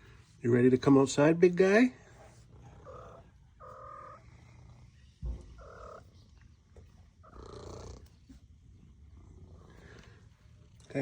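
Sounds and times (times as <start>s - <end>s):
cat meowing: 5.4s - 6.1s.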